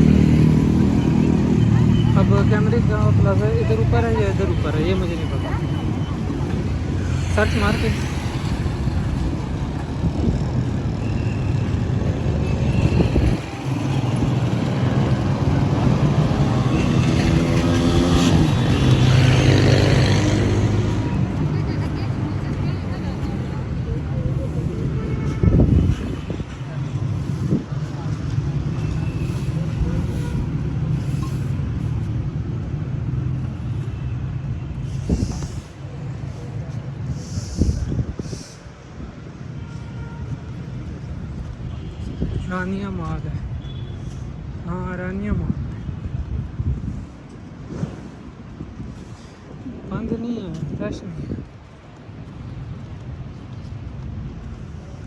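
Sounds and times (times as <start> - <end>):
traffic engines humming: 0.0 - 55.0.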